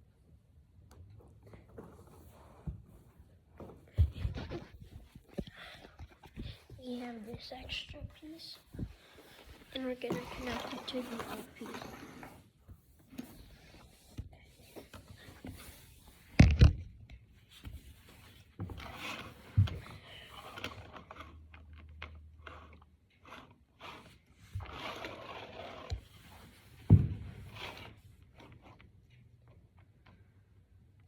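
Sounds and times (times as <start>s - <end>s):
plastic discs scraping and rustling: 4.2s - 16.6s, 17.6s - 26.8s.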